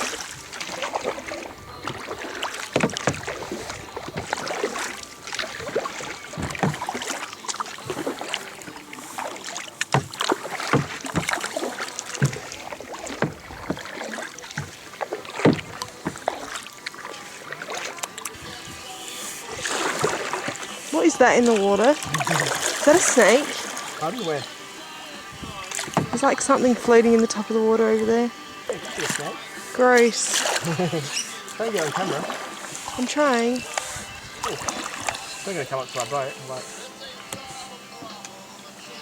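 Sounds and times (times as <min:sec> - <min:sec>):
water dripping: 0:00.0 - 0:18.7, 0:19.4 - 0:36.2
paddle splashing in water: 0:00.0 - 0:39.0
water and wind hiss: 0:00.0 - 0:39.0
sharp knocks: 0:06.4 - 0:06.9, 0:09.9 - 0:11.4.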